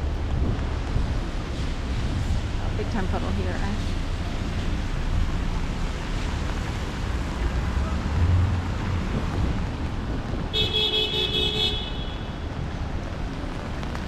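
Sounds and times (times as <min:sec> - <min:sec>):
traffic on wet street: 0:00.0 - 0:14.0
vehicle horn: 0:10.5 - 0:12.4.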